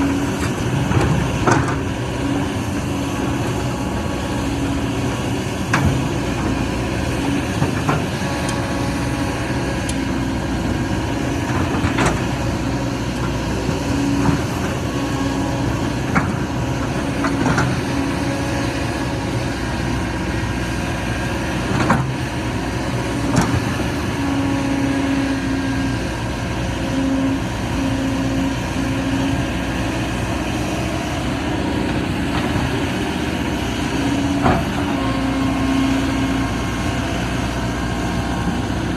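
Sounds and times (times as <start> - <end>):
excavator diesel engine: 0.0 - 38.9.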